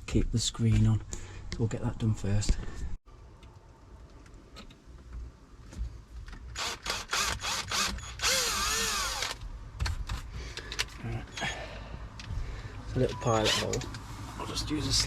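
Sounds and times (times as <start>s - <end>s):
power drill boring: 6.6s - 9.4s.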